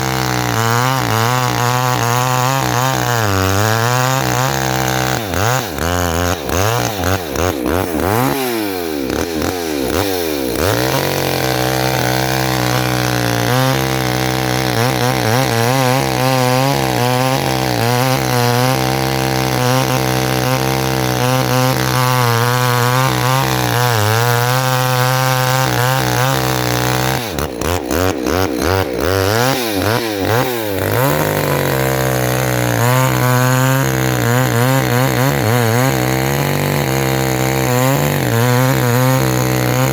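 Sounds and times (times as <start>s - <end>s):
chainsaw cutting into tree: 0.0s - 39.9s.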